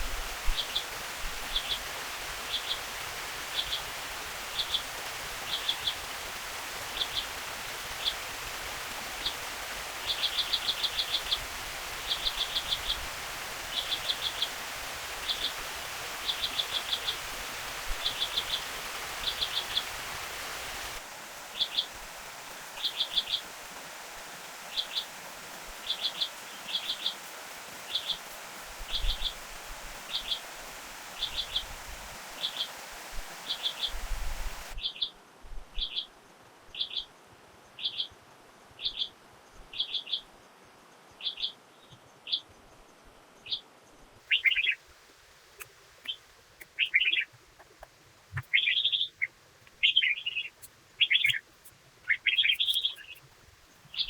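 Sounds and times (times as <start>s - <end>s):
forest stream hiss: 0.0s - 54.0s
small animal chirping: 44.3s - 44.8s, 45.6s - 53.3s.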